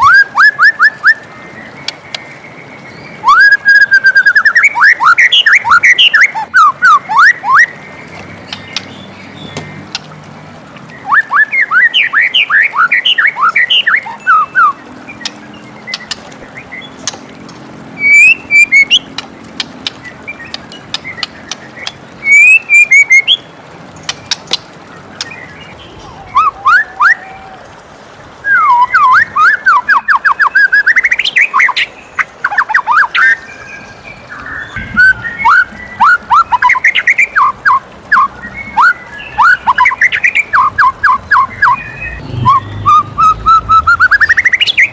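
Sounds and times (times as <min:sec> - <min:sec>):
bird singing whistled notes: 0:00.0 - 0:01.3, 0:02.9 - 0:09.8, 0:10.9 - 0:17.0, 0:18.0 - 0:19.1, 0:20.3 - 0:23.5, 0:28.4 - 0:44.9.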